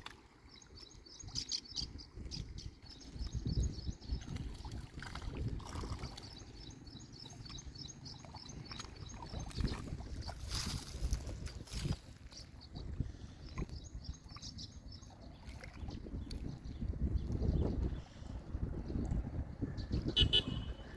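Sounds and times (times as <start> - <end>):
bird chirping: 5.9 - 10.4.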